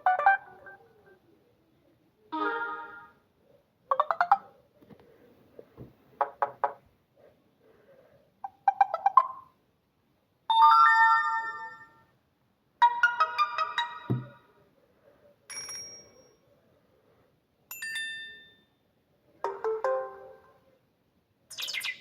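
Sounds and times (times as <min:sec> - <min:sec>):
phone ringtone chimes and jingles: 0:10.5 - 0:12.0, 0:12.8 - 0:14.4, 0:15.5 - 0:16.3.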